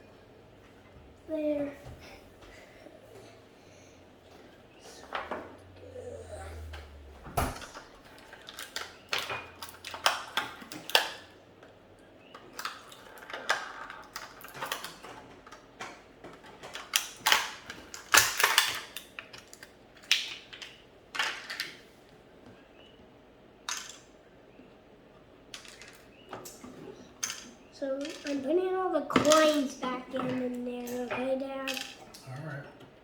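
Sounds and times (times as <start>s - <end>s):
plastic toy pieces clattering: 8.2s - 11.2s, 12.5s - 21.8s, 23.7s - 24.1s, 25.5s - 32.2s.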